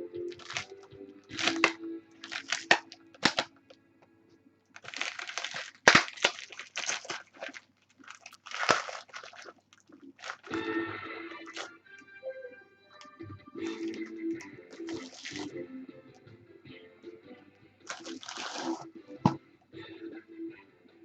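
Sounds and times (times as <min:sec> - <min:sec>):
packaging rustling and tearing: 0:00.3 - 0:03.5, 0:04.8 - 0:10.6, 0:11.4 - 0:11.7, 0:13.6 - 0:15.5, 0:17.9 - 0:18.9.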